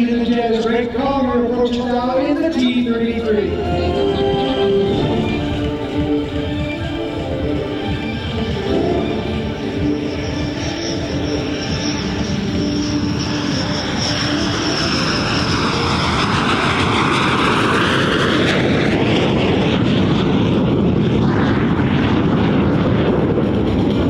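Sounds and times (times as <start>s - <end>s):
jet passing: 0.0s - 24.0s.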